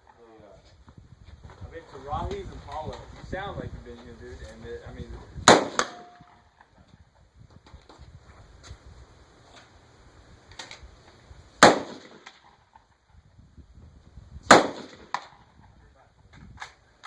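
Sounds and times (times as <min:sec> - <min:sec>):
loud rifle shots with echo: 0:05.4 - 0:06.3, 0:11.6 - 0:12.4, 0:14.5 - 0:15.4
fainter gunshots: 0:05.5 - 0:06.2, 0:11.6 - 0:12.4, 0:14.5 - 0:15.3.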